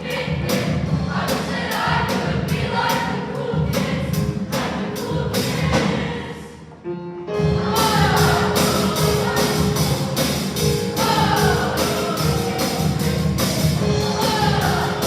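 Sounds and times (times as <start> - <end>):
choir singing: 0.0 - 6.8, 7.4 - 15.0
accompaniment with steady beat: 7.4 - 15.0.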